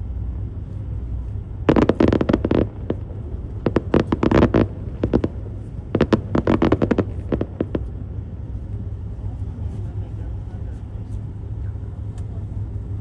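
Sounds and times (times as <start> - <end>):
low rumble: 0.0 - 9.2
fireworks crackling: 1.7 - 8.0.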